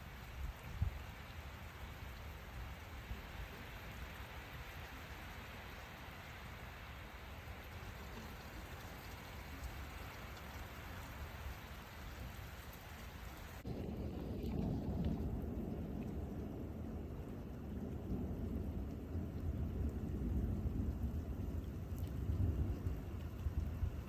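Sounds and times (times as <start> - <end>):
low rumble of thunder: 0.0 - 6.6, 13.4 - 24.0
steady rain hissing: 0.0 - 24.0.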